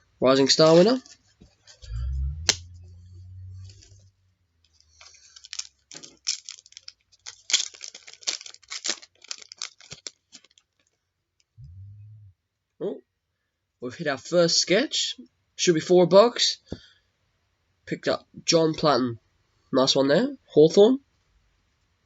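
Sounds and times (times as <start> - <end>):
low rumble: 1.8 - 5.0, 11.6 - 12.4
card pack wrapper crinkling: 4.6 - 11.0.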